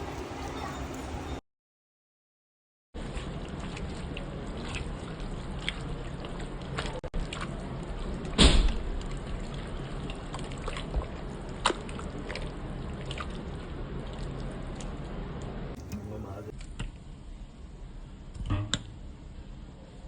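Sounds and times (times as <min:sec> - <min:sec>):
liquid and soft food moving: 0:03.0 - 0:08.2.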